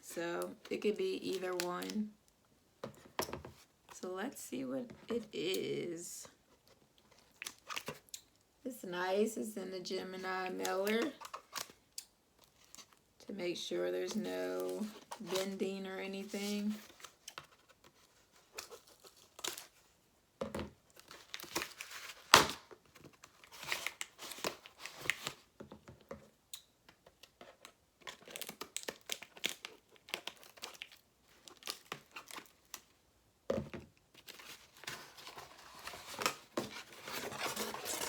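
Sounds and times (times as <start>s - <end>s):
cardboard tearing and crinkling: 34.2s - 38.0s.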